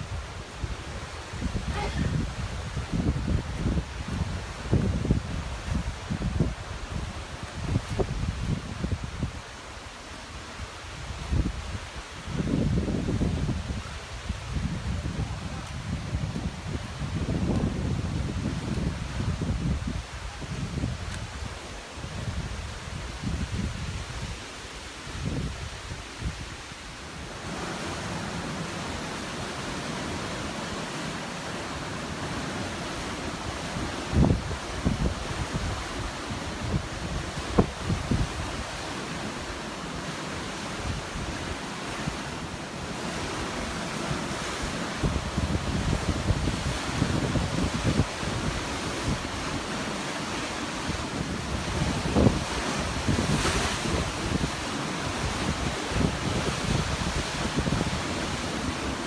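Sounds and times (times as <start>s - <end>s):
wind buffeting microphone: 0.0s - 9.6s, 10.6s - 24.4s, 33.4s - 39.6s, 43.2s - 49.8s, 50.7s - 59.0s
rush of wind: 0.0s - 59.0s
sea surf: 0.0s - 59.0s.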